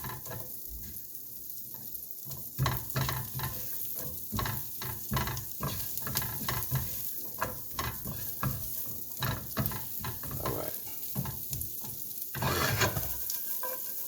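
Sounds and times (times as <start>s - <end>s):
food sizzling in a pan: 0.0s - 14.0s
utensil knocking against pan: 2.6s - 8.6s.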